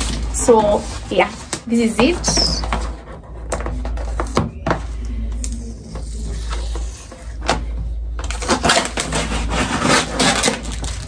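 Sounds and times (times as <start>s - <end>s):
packaging crinkling and rustling: 8.2s - 11.0s.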